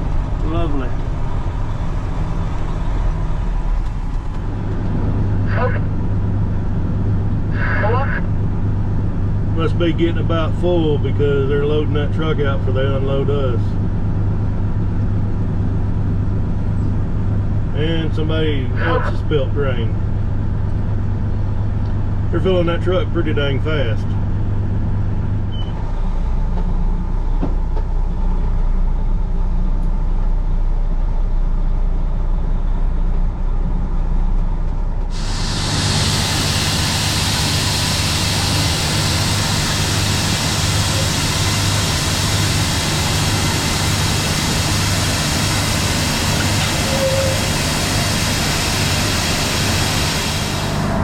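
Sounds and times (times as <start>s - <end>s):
truck engine idling: 0.0s - 51.0s
loud steady rushing noise: 35.1s - 51.0s.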